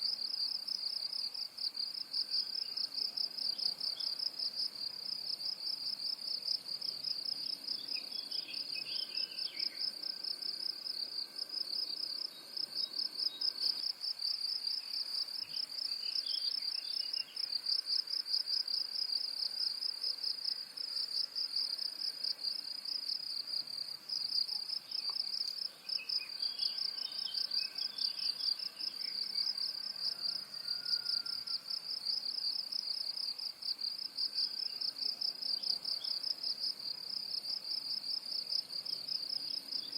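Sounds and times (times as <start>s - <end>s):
faint bird chirps: 14.8s - 17.5s, 24.5s - 31.7s.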